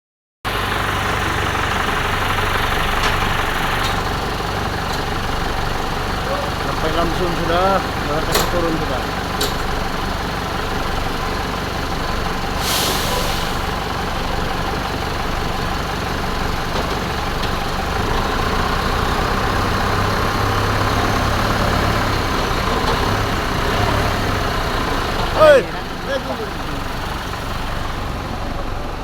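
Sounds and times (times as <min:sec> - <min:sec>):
heavy vehicle engine idling: 0:00.5 - 0:29.0
short hiss: 0:12.6 - 0:13.6.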